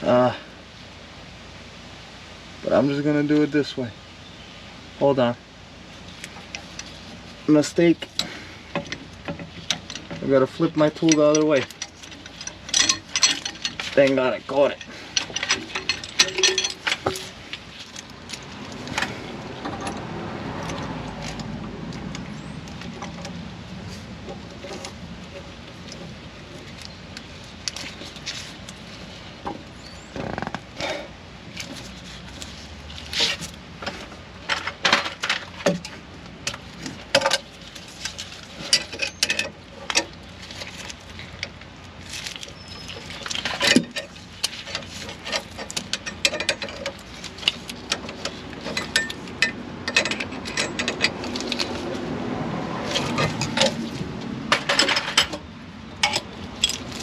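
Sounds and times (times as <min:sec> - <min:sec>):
metal rubbing and scraping: 0:06.1 - 0:57.0
metal tool clicking and clinking: 0:10.8 - 0:23.3, 0:43.0 - 0:51.9, 0:54.5 - 0:57.0.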